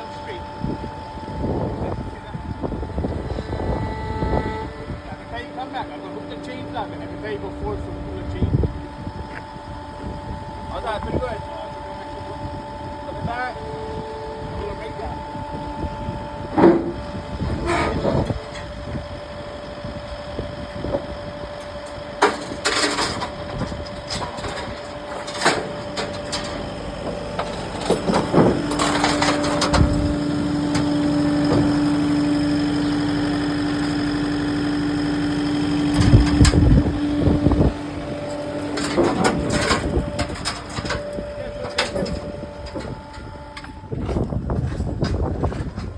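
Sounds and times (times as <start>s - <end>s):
steady whine: 0.0s - 45.9s
truck engine running: 0.0s - 45.9s
metal chains clanking: 16.6s - 18.8s, 22.2s - 30.8s, 35.2s - 45.9s.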